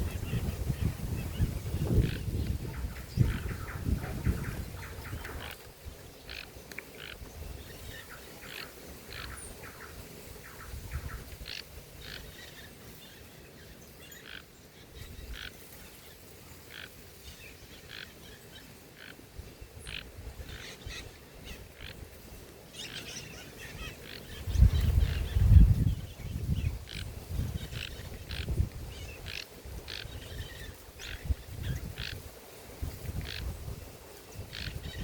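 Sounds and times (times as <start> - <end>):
birds chirping: 0.0 - 5.6.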